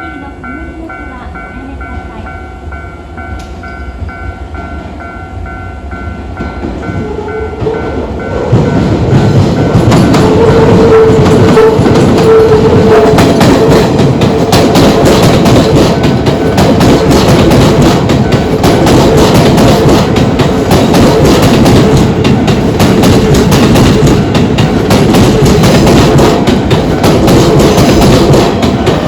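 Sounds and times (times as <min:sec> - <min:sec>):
electric train passing: 0:00.0 - 0:29.0
train wheels clattering over rail joints: 0:06.4 - 0:29.0.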